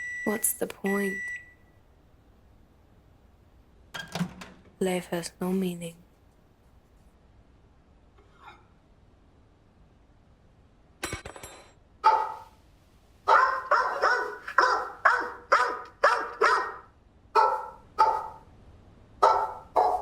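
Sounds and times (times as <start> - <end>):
dog barking: 12.0 - 12.6, 13.3 - 18.5, 19.2 - 20.0.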